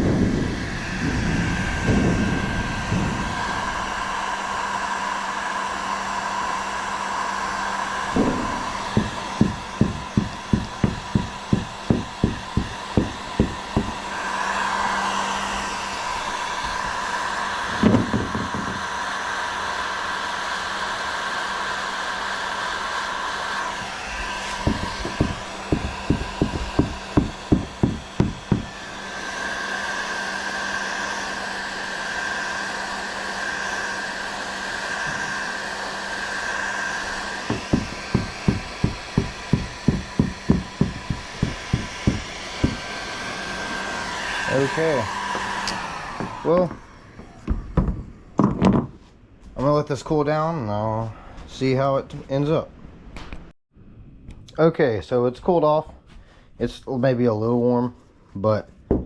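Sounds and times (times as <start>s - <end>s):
heat gun blowing with a whine: 0.0s - 49.0s
thump: 8.1s - 13.9s, 17.7s - 18.8s, 24.5s - 28.6s, 47.5s - 49.0s
regular knocking: 8.1s - 14.0s, 24.6s - 28.7s, 37.5s - 42.9s, 45.7s - 49.0s.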